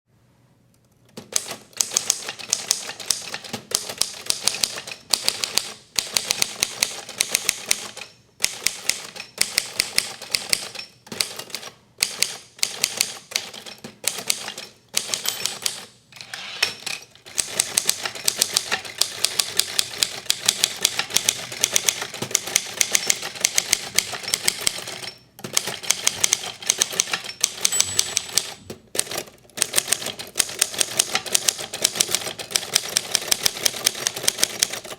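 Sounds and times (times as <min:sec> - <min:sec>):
manual typewriter typing: 0:01.1 - 0:15.9, 0:16.6 - 0:34.9.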